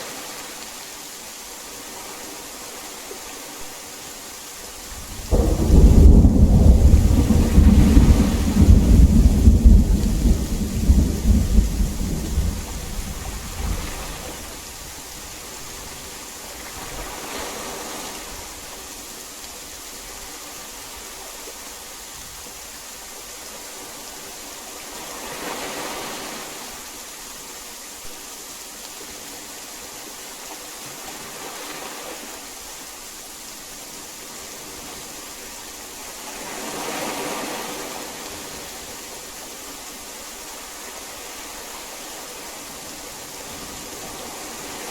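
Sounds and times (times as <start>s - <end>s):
heavy rain: 0.0s - 44.9s
low rumble of thunder: 4.8s - 14.7s.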